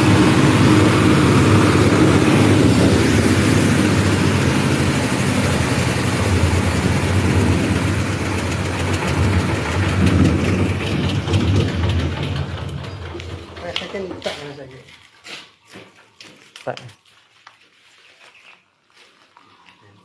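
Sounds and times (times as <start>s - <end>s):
shredding machine hum and rush: 0.0s - 14.4s.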